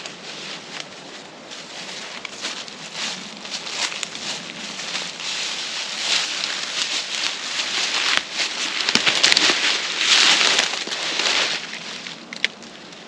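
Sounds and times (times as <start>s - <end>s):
footsteps crunching through dry leaves: 0.0s - 13.0s
sharp cracks: 6.1s - 11.7s.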